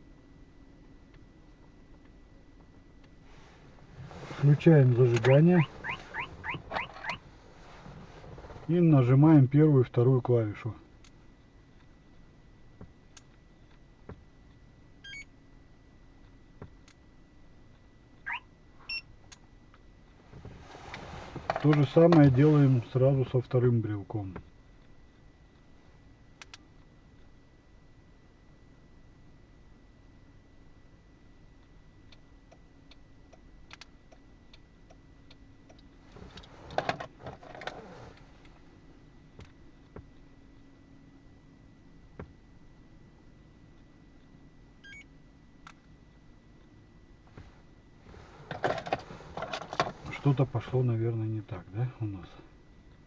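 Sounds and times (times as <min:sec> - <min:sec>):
falling electronic chirp: 0:05.3 - 0:07.2.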